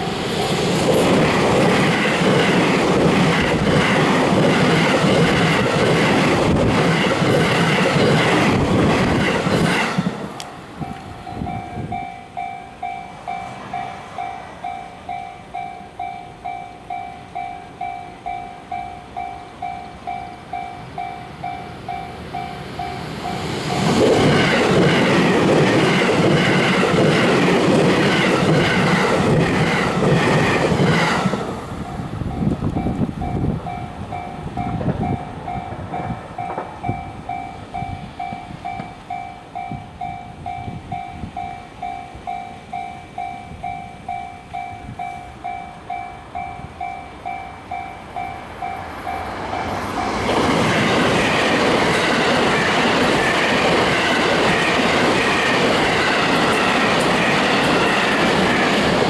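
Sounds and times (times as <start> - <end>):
railroad crossing alarm ringing: 0.0 - 59.0
train passing with wheel clatter: 0.0 - 59.0.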